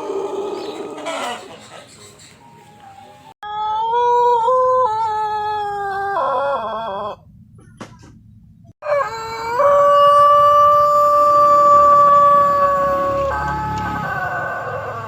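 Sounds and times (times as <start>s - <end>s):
rooster crowing: 0.0s - 1.9s, 8.8s - 15.0s.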